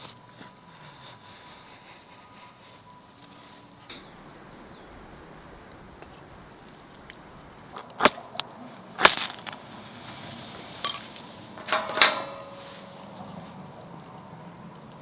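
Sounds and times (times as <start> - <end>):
metal gear clanking: 10.8 - 11.1.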